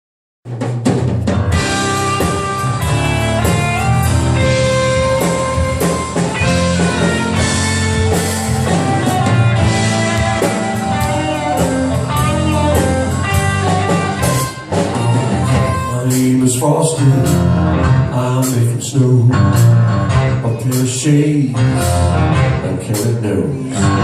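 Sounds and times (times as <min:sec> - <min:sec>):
blues band playing: 0:00.5 - 0:24.0.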